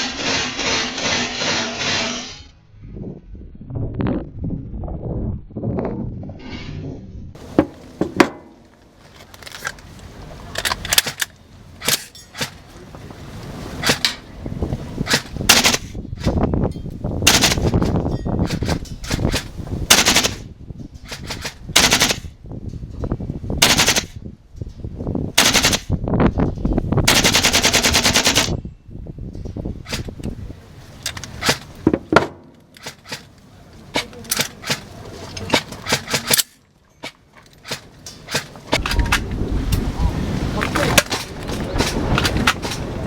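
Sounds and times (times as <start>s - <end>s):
wind buffeting microphone: 2.6s - 8.2s, 12.8s - 32.4s, 37.6s - 43.0s
airsoft rifle shots: 15.1s - 16.4s, 17.2s - 17.9s, 18.5s - 20.5s, 21.1s - 22.3s, 23.6s - 24.2s, 25.4s - 26.0s, 27.1s - 28.6s, 35.6s - 36.6s
blowback bolt clack: 31.0s - 39.2s.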